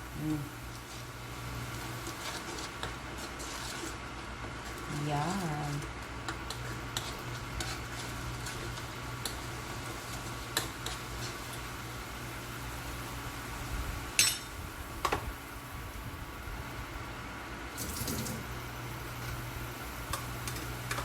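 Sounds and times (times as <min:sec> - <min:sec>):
cookware and utensils clinking: 0:14.2 - 0:14.6.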